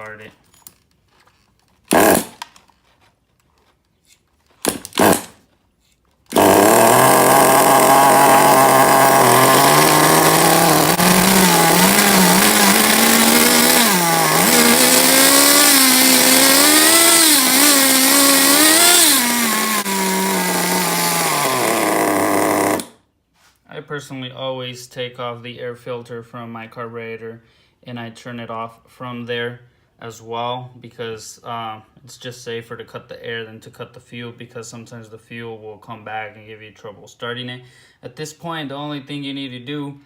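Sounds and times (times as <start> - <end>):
small glow engine revving: 6.3 - 22.9.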